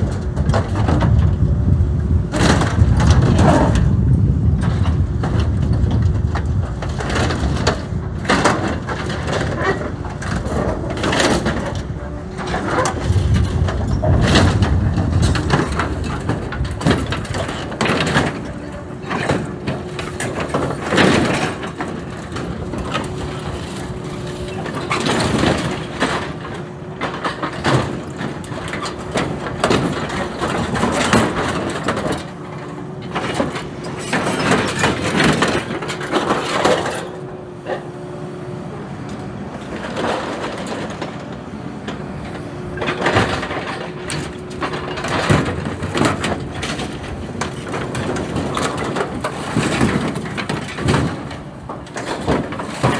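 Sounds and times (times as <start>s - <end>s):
metal crunching and cracking: 0.0s - 37.8s, 39.1s - 52.9s
excavator running: 0.0s - 52.9s.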